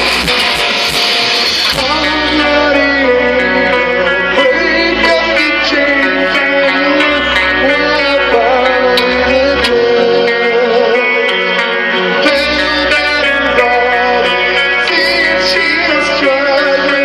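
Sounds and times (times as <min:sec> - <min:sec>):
deep bass: 0:00.0 - 0:11.3
distorted electric guitars: 0:00.0 - 0:17.0.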